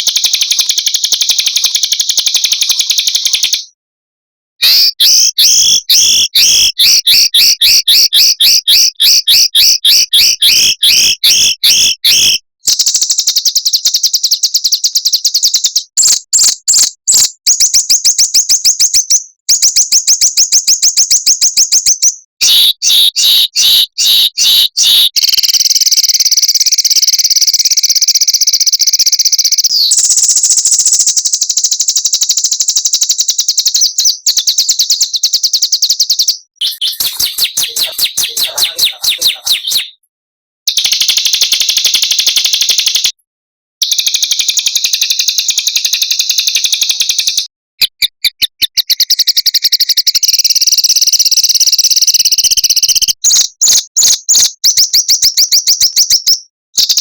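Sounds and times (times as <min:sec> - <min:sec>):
buzzy bird trill: 0:00.0 - 0:03.6, 0:35.6 - 0:40.0
songbirds trilling: 0:36.6 - 0:40.0.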